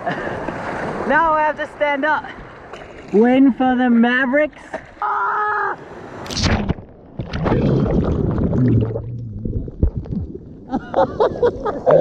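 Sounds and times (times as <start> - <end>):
surf water sloshing: 0.0 - 5.2.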